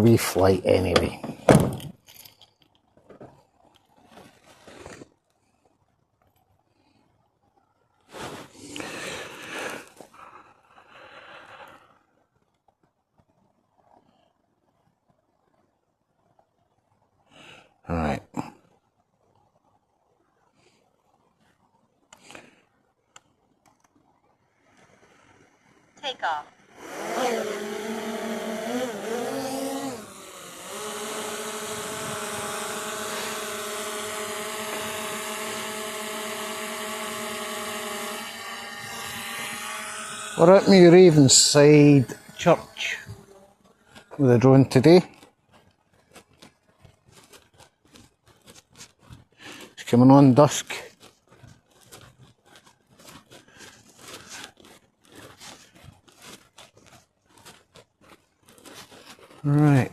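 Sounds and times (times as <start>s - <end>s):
faint rustling and crunching: 0.2s - 26.0s, 29.1s - 59.9s
drone propellers humming: 26.8s - 43.4s.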